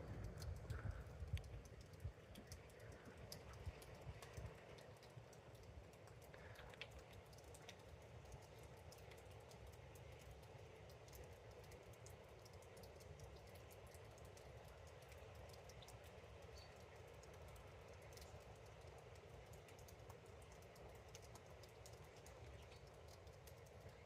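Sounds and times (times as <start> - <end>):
faint irregular clicks: 0.0 - 24.0.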